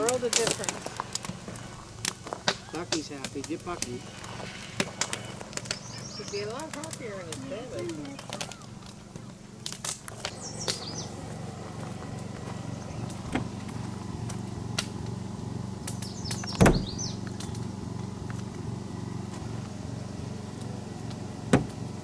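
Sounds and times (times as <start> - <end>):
low mechanical motor hum: 0.0 - 22.0.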